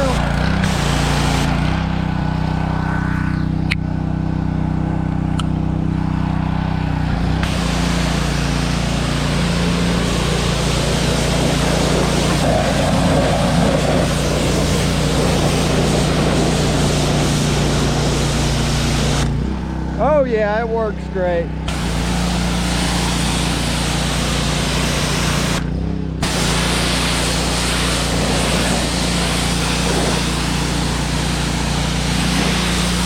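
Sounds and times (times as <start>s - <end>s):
high-pressure water spray hiss: 0.0s - 1.5s, 7.4s - 19.4s, 21.7s - 33.0s
small gas engine running: 0.0s - 33.0s.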